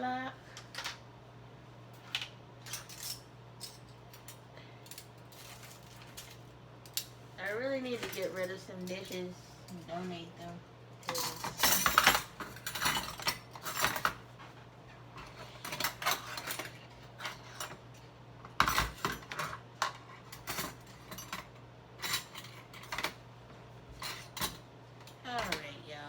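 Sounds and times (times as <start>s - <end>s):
dishes and cutlery clattering: 11.0s - 14.2s, 15.2s - 17.8s, 18.5s - 23.2s, 23.9s - 24.6s.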